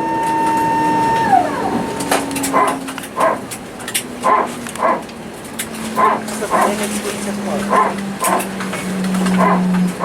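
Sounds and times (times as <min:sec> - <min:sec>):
jet engine whine in cabin: 0:00.0 - 0:10.0
low hum: 0:00.0 - 0:10.0.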